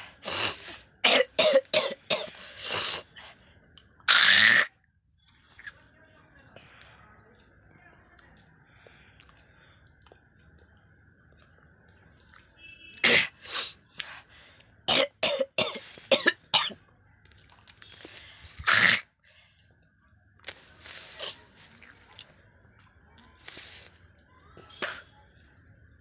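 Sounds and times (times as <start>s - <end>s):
harsh throat-clearing: 0.0s - 3.1s, 4.1s - 4.7s, 14.9s - 16.8s, 18.6s - 19.1s
person coughing: 1.0s - 3.0s, 14.9s - 16.8s.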